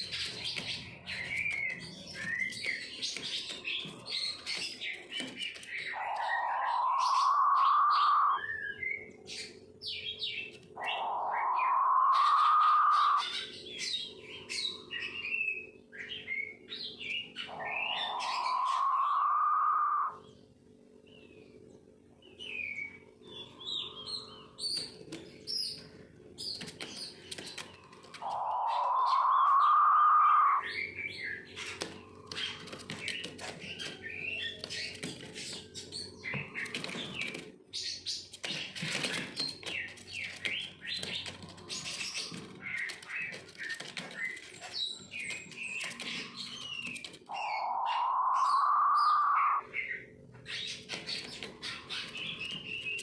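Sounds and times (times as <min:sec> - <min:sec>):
quail rasping call: 0:05.9 - 0:08.6, 0:10.8 - 0:13.3, 0:17.5 - 0:20.2, 0:28.2 - 0:30.6, 0:47.3 - 0:49.6.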